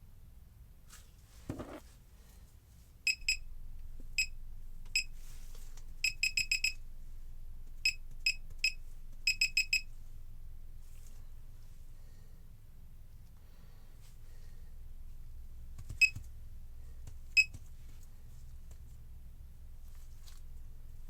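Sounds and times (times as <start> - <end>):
electronic key-click beeps: 6.1 - 6.8, 7.9 - 9.8.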